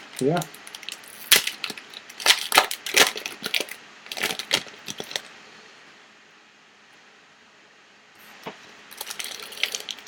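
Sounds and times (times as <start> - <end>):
foil wrapper crinkling: 0.2 - 5.3, 8.9 - 10.0.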